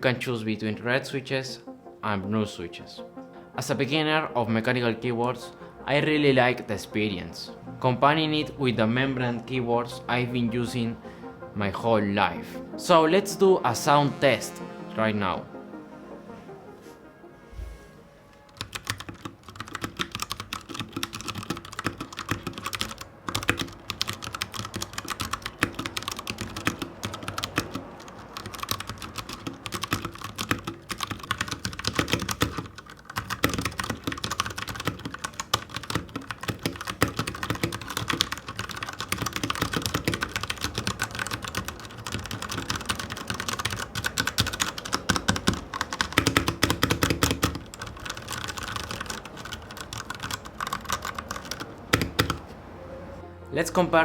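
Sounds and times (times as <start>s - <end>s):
mechanical keyboard typing: 18.5s - 52.5s.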